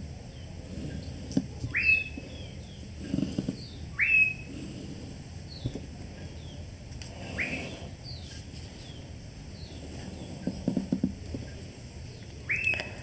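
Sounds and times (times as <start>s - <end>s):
birds chirping: 0.2s - 10.7s, 11.4s - 13.0s
rising whistled bird calls: 1.7s - 2.6s, 3.6s - 4.5s, 7.3s - 8.2s, 12.4s - 12.9s.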